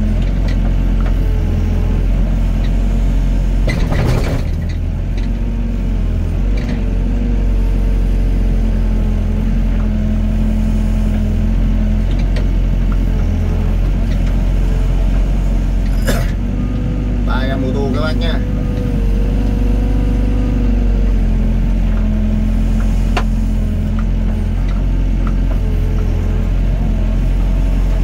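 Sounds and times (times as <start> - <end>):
diesel excavator engine running: 0.0 - 28.0
hydraulic whine: 14.4 - 28.0.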